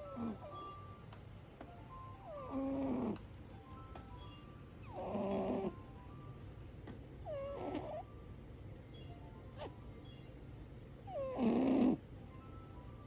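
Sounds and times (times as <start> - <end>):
cat snoring: 0.0 - 0.6, 2.3 - 3.2, 4.8 - 5.9, 7.3 - 8.0, 11.1 - 12.0.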